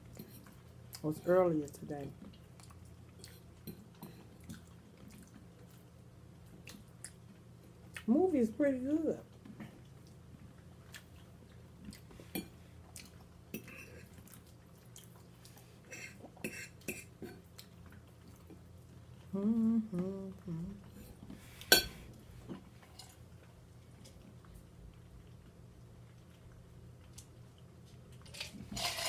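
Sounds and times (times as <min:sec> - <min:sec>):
cutlery clinking and scraping on plate: 0:21.6 - 0:22.0, 0:28.3 - 0:29.0.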